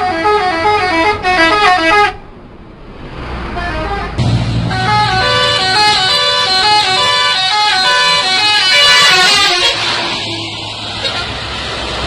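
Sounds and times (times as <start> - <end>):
bus multi-tone horn tune: 0.0 - 2.2, 3.4 - 11.5
low rumble: 4.2 - 6.9.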